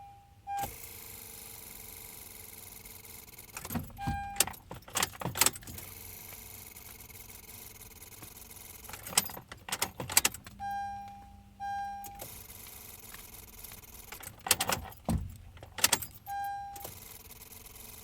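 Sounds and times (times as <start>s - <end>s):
car keys jangling: 2.6s - 11.3s, 11.9s - 18.0s
short electronic beeps: 10.6s - 12.4s, 16.2s - 16.9s.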